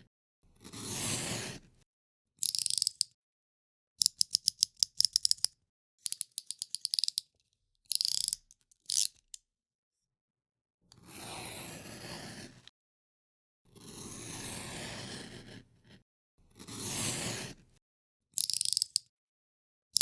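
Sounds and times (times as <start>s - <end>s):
utility knife slider clicking: 2.4s - 3.1s, 4.0s - 7.2s, 7.9s - 9.4s, 18.4s - 19.1s.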